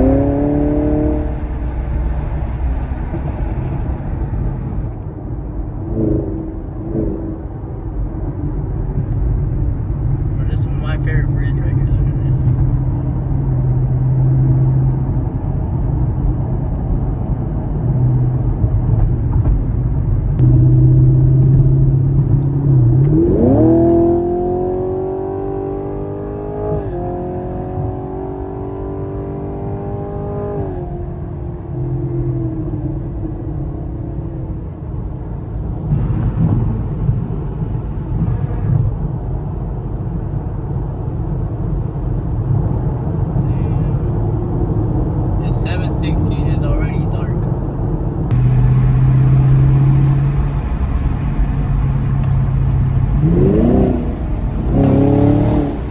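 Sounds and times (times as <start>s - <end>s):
car engine accelerating: 0.0s - 5.1s, 20.3s - 31.3s, 48.2s - 55.9s
road noise: 0.0s - 55.9s.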